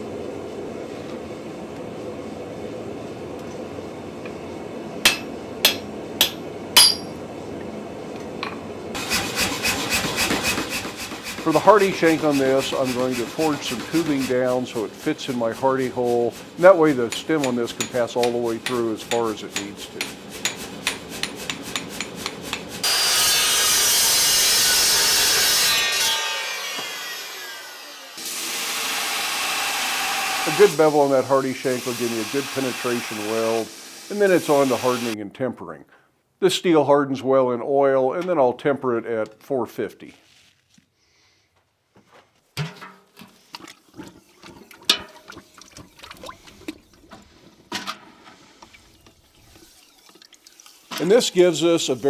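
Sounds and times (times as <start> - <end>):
hammer blows on steel: 5.1 - 7.2, 9.0 - 23.4
metal clinking against metal: 5.1 - 7.2
power grinder grinding steel: 9.0 - 35.2.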